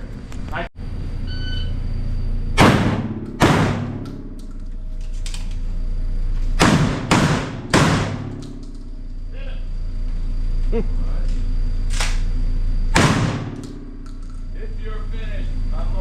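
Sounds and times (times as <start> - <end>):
shot timer beep: 1.2 - 1.8
gunshots ringing indoors: 2.6 - 4.5, 6.6 - 8.8, 12.9 - 14.4.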